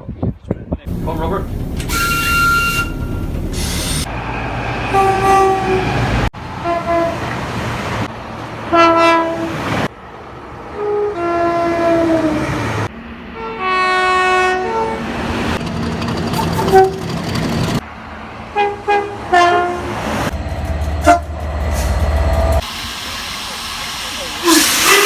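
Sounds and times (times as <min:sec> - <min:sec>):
heavy low train rumble: 0:00.9 - 0:25.0
train horn blasts: 0:01.9 - 0:03.3, 0:04.9 - 0:07.3, 0:08.7 - 0:09.6, 0:10.8 - 0:12.6, 0:13.4 - 0:15.1, 0:18.5 - 0:20.1, 0:21.0 - 0:21.9.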